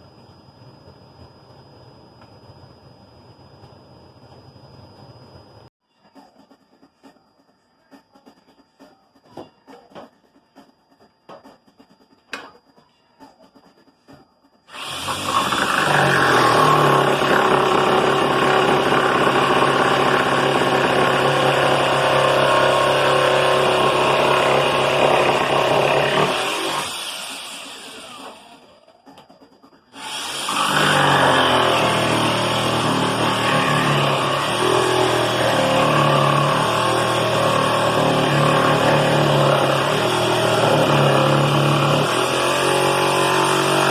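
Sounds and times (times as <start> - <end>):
power tool motor humming: 14.7 - 28.4, 30.0 - 43.9.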